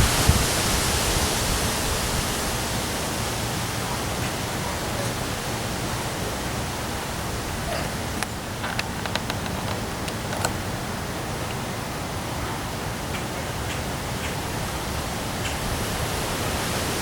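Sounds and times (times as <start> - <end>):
heavy rain and wind: 0.0 - 17.0
raindrops ticking: 6.9 - 11.6.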